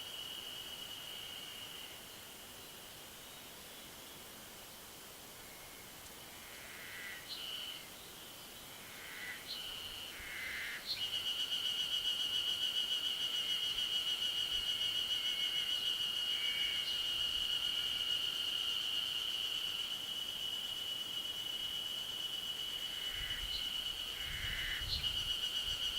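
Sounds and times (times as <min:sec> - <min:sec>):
loud high pulsing cicada song: 0:00.0 - 0:04.2, 0:05.2 - 0:25.9
cicadas chorus: 0:00.0 - 0:25.9
short cicada chirps: 0:06.5 - 0:08.2, 0:09.0 - 0:25.9.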